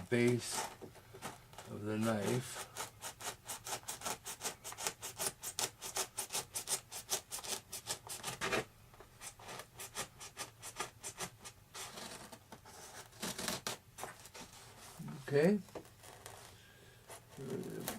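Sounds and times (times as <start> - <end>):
knife blade sawing through foam: 1.8 - 8.6.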